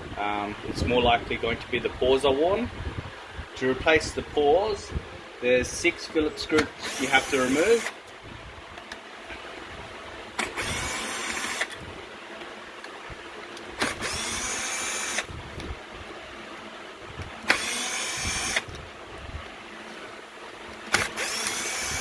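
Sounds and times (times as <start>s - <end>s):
cordless drill backing out screws: 6.6s - 8.0s, 17.4s - 18.7s, 20.8s - 22.0s.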